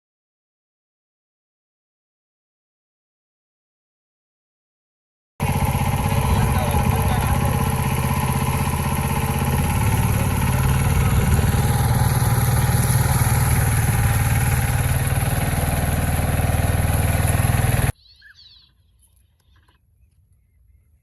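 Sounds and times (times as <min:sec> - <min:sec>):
small engine running: 0:05.4 - 0:18.0.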